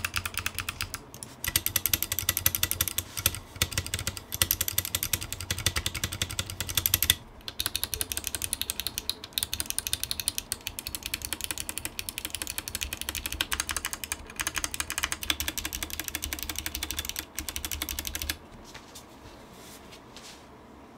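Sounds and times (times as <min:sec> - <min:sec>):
fast typing on clicky keyboard: 0:00.0 - 0:18.4.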